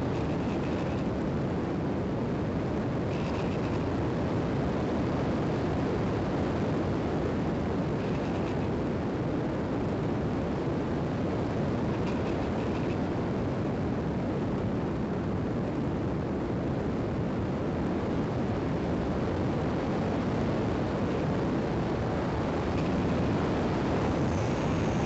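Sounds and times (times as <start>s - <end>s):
wind rush: 0.0s - 25.0s.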